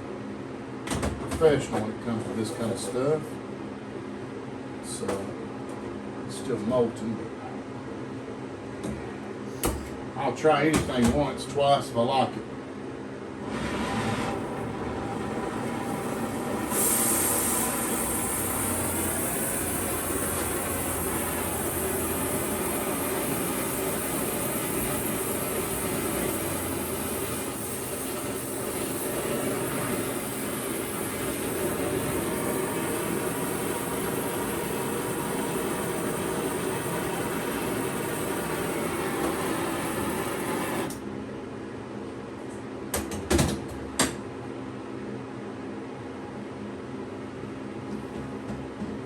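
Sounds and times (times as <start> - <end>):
torch burning with steady hiss: 13.8 - 41.0.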